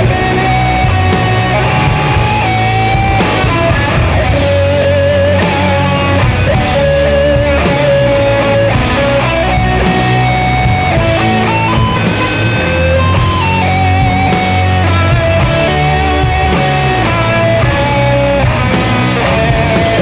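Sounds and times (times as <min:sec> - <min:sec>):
distorted guitars and bass: 0:00.0 - 0:20.0
wavering lead guitar melody: 0:00.0 - 0:20.0.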